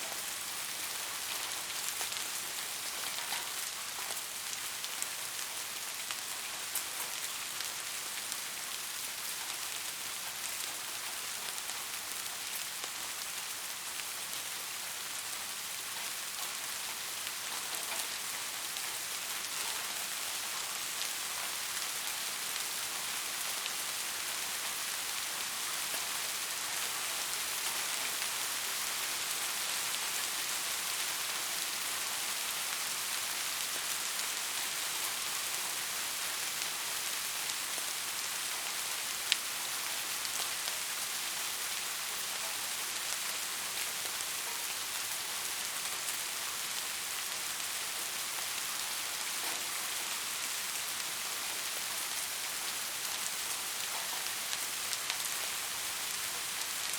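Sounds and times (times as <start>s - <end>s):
rain on hard surfaces: 0.0s - 56.9s.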